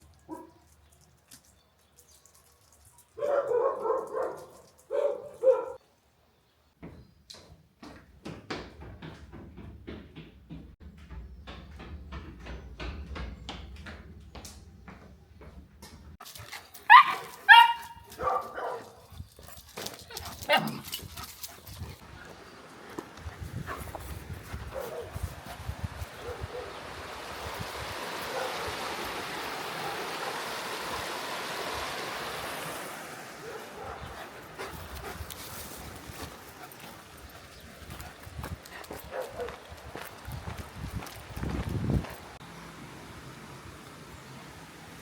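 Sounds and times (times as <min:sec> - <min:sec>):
dog barking: 0:00.3 - 0:00.6, 0:03.2 - 0:05.8, 0:16.9 - 0:19.0, 0:24.7 - 0:25.2, 0:26.2 - 0:26.8, 0:28.2 - 0:28.7, 0:33.4 - 0:34.2, 0:39.1 - 0:39.6.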